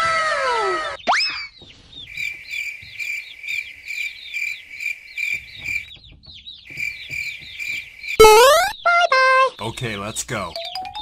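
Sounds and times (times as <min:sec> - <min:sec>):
high-pitched chirping: 0:08.1 - 0:09.5
steady high tone: 0:08.2 - 0:08.7.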